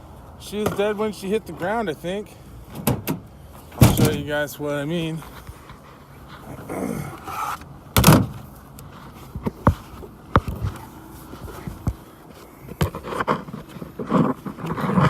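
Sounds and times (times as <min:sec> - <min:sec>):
loud handling thump: 0:03.8 - 0:04.3, 0:08.0 - 0:08.4.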